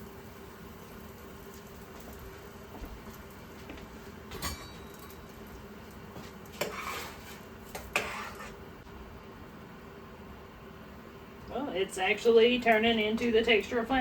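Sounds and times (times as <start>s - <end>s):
faint steady hum: 0.0s - 14.0s
kitchenware clattering: 4.3s - 5.3s
kitchenware clinking: 4.3s - 5.4s.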